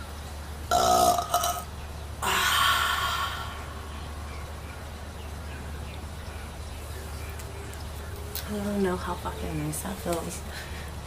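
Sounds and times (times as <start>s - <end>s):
woman belching: 0.7s - 3.6s.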